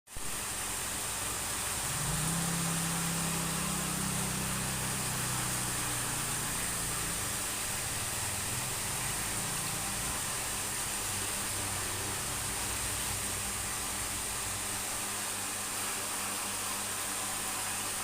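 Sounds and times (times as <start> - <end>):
steady hiss: 0.1 - 18.0
low motor hum: 0.9 - 15.1.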